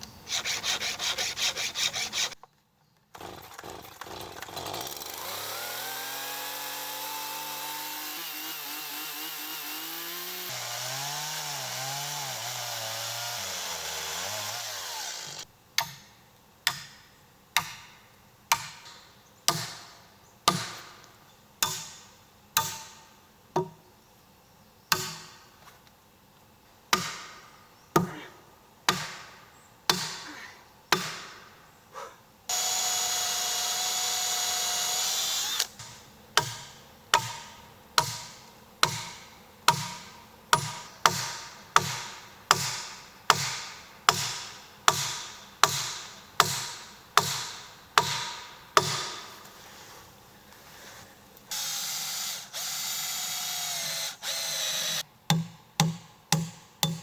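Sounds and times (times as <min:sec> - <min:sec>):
cordless drill running: 0:13.4 - 0:15.5, 0:32.5 - 0:35.7, 0:51.5 - 0:55.0.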